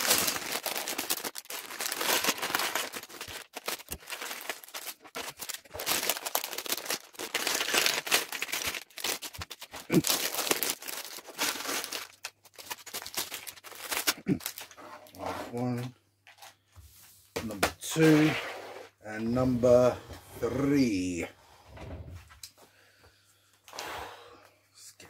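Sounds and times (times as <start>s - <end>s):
plastic bags crinkling and tearing: 0.0s - 15.2s.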